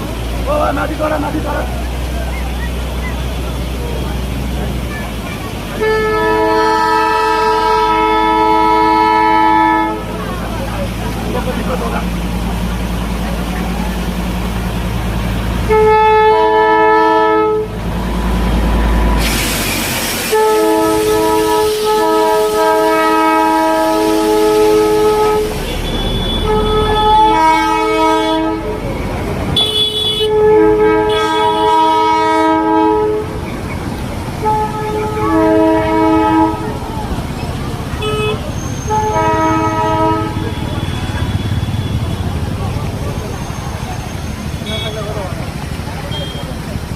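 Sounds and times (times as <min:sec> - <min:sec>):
rumble of running train: 0:00.0 - 0:46.9
train horn two-note blasts: 0:05.8 - 0:10.1, 0:15.6 - 0:17.8, 0:20.3 - 0:28.8, 0:29.6 - 0:33.4, 0:34.4 - 0:36.8, 0:38.0 - 0:42.1
hiss burst: 0:18.8 - 0:26.4.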